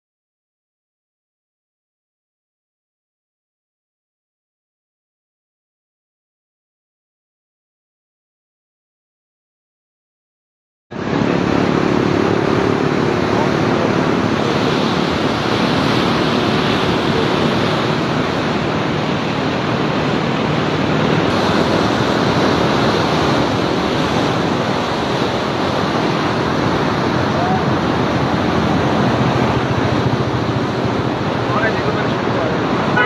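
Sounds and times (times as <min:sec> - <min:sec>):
rushing river floodwater: 0:10.9 - 0:33.0.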